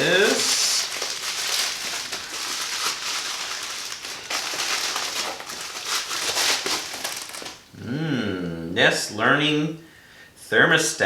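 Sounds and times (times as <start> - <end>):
packaging rustling and crinkling: 0.0 - 7.6.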